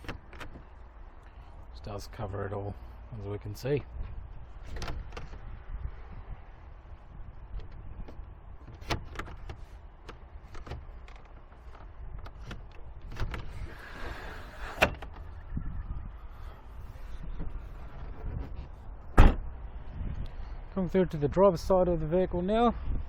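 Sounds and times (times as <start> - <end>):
clicks and knocks from cargo cover: 0.0 - 0.7, 4.6 - 5.4, 7.6 - 13.6
steady low rumble: 0.2 - 23.0.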